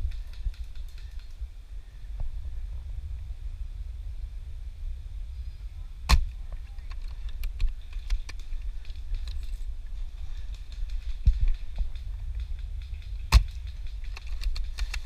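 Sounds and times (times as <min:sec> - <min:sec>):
steady low rumble: 0:00.0 - 0:15.0
sharp crack: 0:06.1 - 0:06.4, 0:10.8 - 0:15.0.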